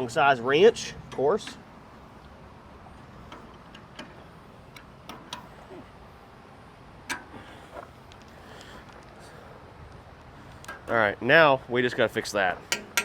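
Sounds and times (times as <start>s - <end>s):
wrench clicking on bolts: 12.7s - 13.0s.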